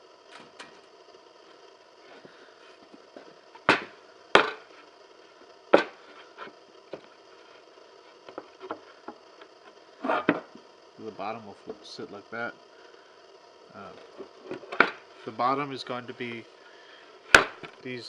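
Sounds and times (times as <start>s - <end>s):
wooden boards knocking: 3.6s - 4.6s, 5.7s - 6.0s.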